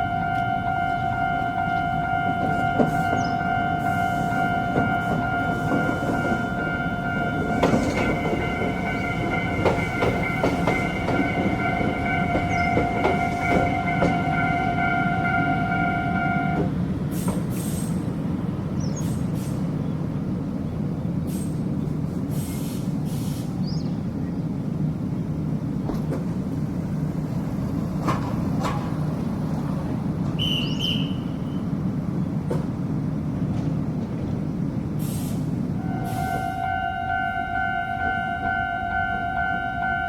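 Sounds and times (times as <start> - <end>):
level crossing warning bell: 0.0 - 16.7, 35.9 - 40.0
train low rumble: 0.0 - 40.0
short hissing bursts: 22.3 - 23.6, 35.0 - 35.5.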